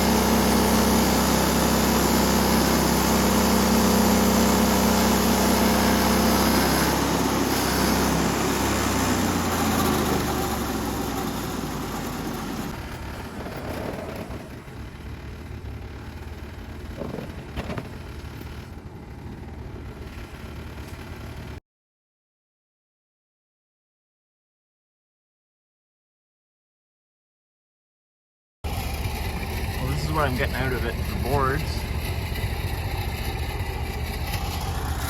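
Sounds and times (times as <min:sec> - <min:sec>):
gas engine running and winding down: 0:00.0 - 0:21.6, 0:28.7 - 0:35.0.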